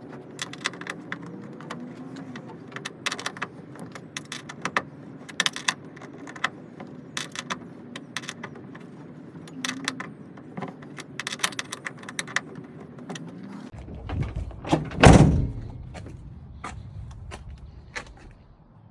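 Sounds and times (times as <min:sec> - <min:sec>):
low rumble: 0:13.8 - 0:18.9
loud thump: 0:14.1 - 0:18.3.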